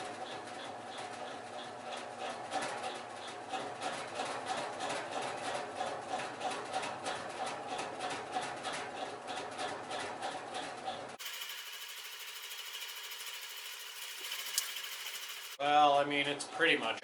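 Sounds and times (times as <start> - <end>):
ceiling fan motor hum: 11.2 - 15.6
rhythmic vibration rattle: 11.2 - 15.6.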